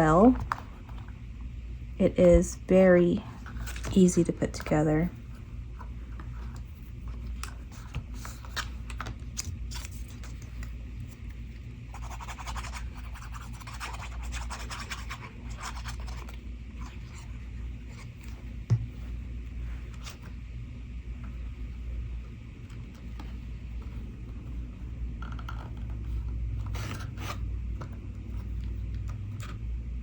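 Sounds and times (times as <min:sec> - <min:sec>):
paper scratching and rubbing: 0:11.9 - 0:18.4, 0:26.6 - 0:27.5.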